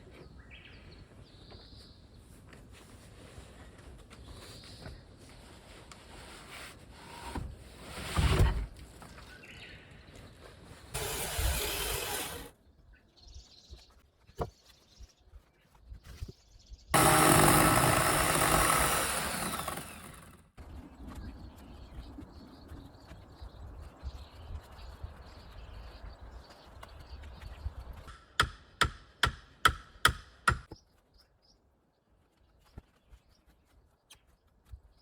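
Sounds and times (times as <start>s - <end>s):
chainsaw running: 11.0s - 12.5s, 17.0s - 20.4s.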